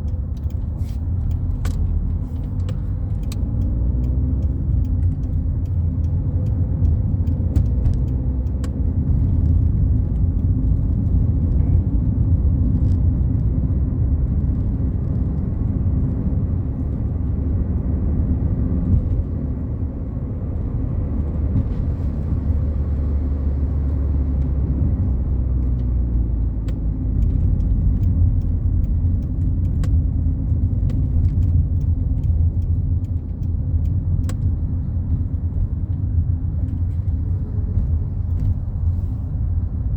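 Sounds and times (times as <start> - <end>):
car engine and tyres rumbling: 0.0 - 39.9.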